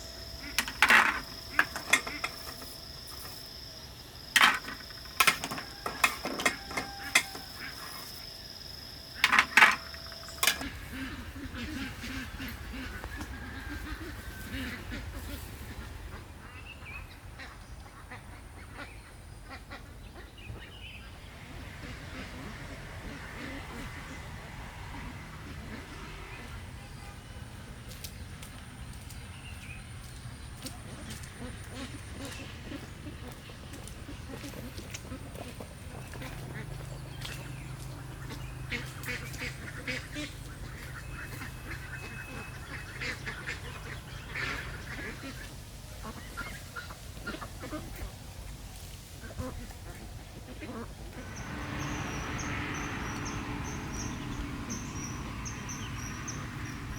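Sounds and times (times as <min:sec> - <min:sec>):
steady low hum: 0:00.0 - 0:56.9
ducks quacking: 0:04.4 - 0:20.7, 0:21.6 - 0:27.4, 0:30.6 - 0:48.1, 0:49.2 - 0:56.9
steady low rumble: 0:26.4 - 0:56.9.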